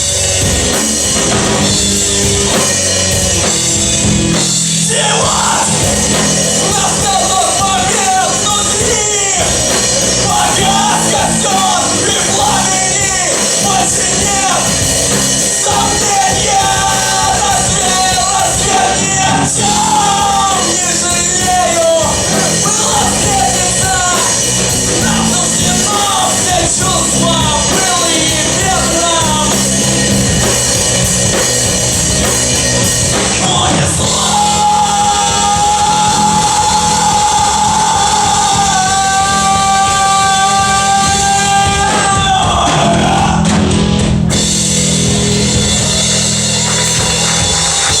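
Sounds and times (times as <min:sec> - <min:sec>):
live rock band playing: 0:00.0 - 0:48.0
person singing: 0:02.5 - 0:29.9, 0:33.1 - 0:43.6.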